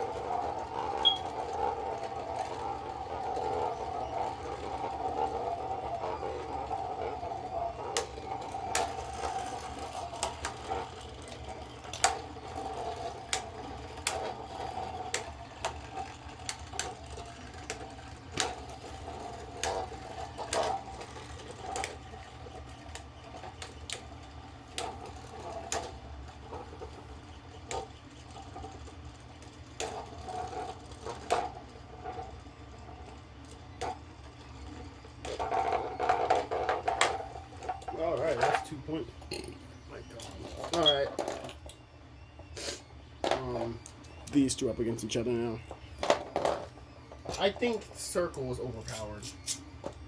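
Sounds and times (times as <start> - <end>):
spinning tops clacking: 0.0 - 39.6
spinning tops whirring: 0.0 - 50.0.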